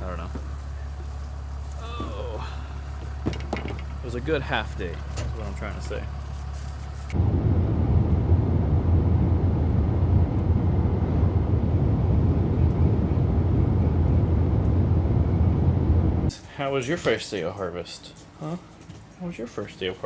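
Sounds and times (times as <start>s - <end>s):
vehicle engine rumble: 0.0s - 19.2s.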